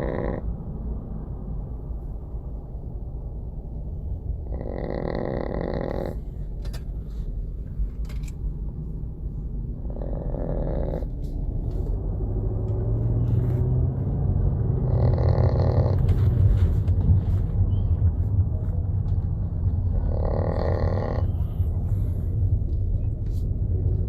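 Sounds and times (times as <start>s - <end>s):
small dog snoring: 0.0s - 0.5s, 4.4s - 6.2s, 9.8s - 11.2s, 14.8s - 16.1s, 19.9s - 21.6s
low steady rumble: 0.0s - 24.0s.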